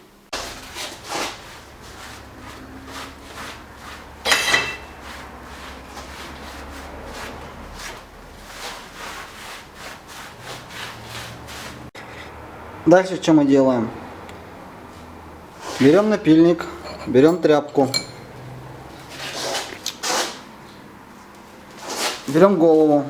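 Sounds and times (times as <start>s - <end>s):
shrill scrape: 0.4s - 5.3s
brush sweeping metal chips: 0.4s - 11.9s.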